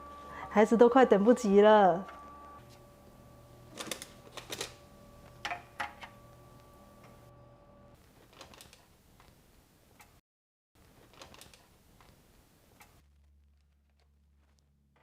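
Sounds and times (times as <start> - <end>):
faint electric hum: 0.0 - 10.0.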